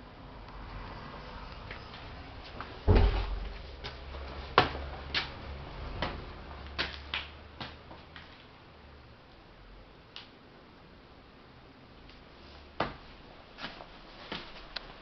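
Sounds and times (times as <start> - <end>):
heavy low thump: 2.8 - 3.6.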